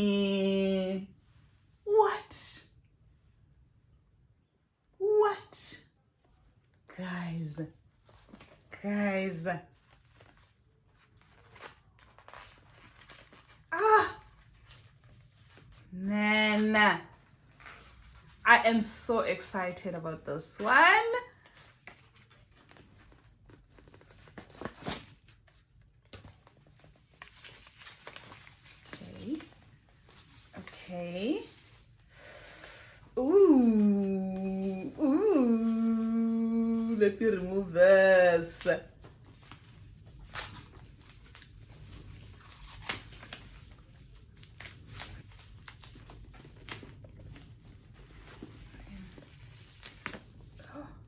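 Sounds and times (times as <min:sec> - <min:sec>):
packaging crinkling: 0:09.8 - 0:15.8, 0:21.5 - 0:32.1, 0:38.8 - 0:50.5.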